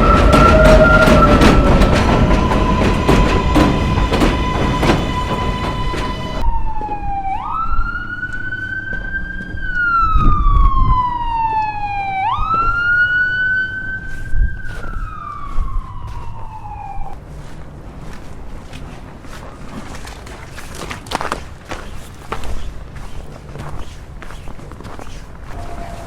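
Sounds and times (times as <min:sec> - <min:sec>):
street traffic noise: 0:00.0 - 0:07.0, 0:08.0 - 0:26.0
emergency vehicle siren wailing: 0:00.0 - 0:18.2, 0:25.5 - 0:26.0.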